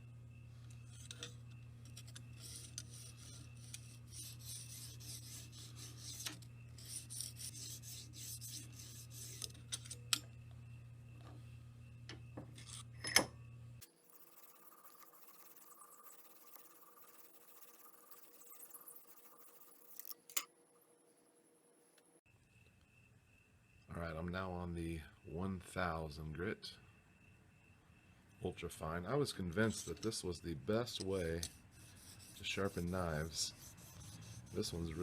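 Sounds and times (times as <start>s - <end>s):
hone rasping along knife blade: 31.1s - 35.0s.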